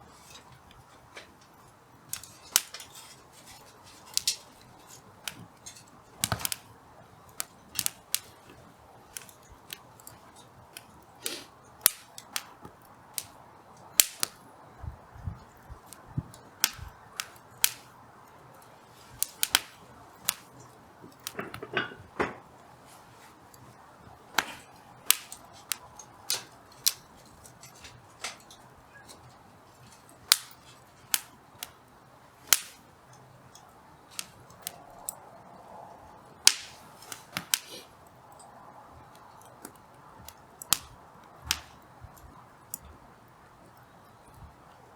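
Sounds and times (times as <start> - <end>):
faint steady hiss: 0.0 - 44.9
firewood crackling and popping: 0.0 - 44.9.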